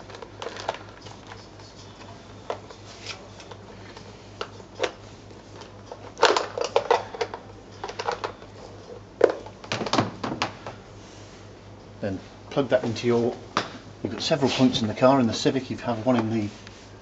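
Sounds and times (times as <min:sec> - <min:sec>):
plastic clicks and rattles: 0:05.6 - 0:08.4.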